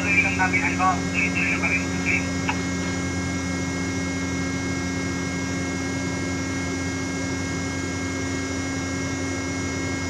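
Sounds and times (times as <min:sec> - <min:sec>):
ship machinery humming: 0:00.0 - 0:03.5.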